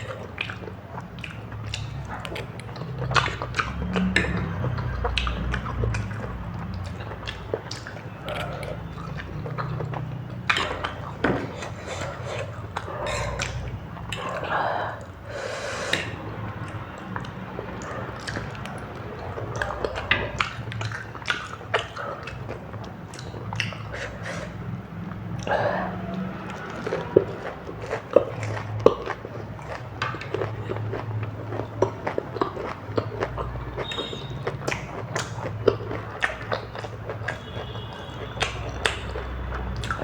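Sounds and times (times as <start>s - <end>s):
chewing and mouth smacks: 0.0s - 40.0s.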